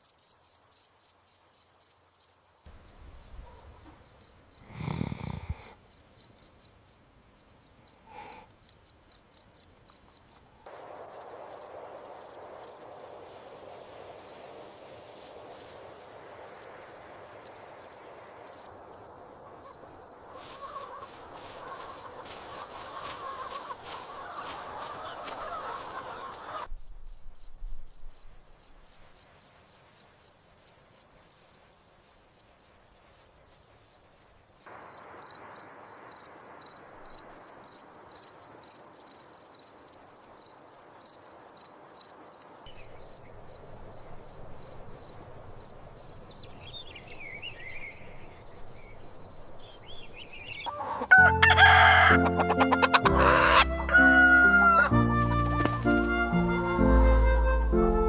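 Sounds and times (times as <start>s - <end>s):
pulsing insect chirr: 0.0s - 52.1s
faint outdoor noise: 0.0s - 58.0s
rooster crowing: 19.6s - 26.7s, 50.6s - 56.5s
flute music: 51.2s - 58.0s.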